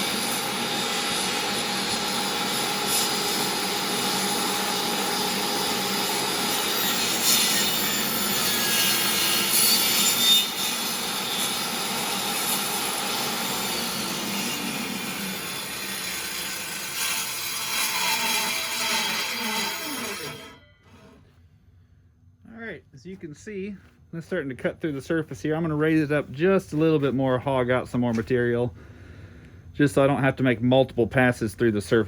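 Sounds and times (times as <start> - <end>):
table saw cutting wood: 0.0 - 21.3.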